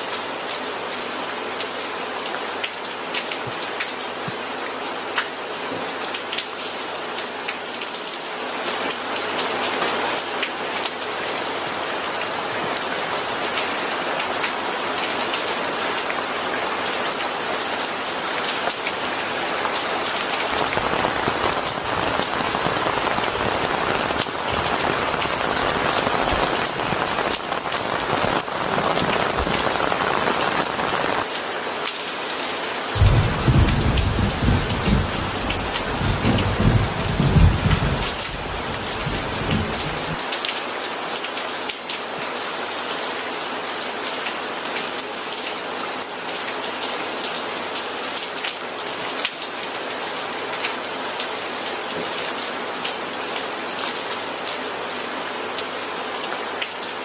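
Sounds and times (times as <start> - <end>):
steady rain falling: 0.0 - 57.0
rumble of thunder: 33.0 - 40.2.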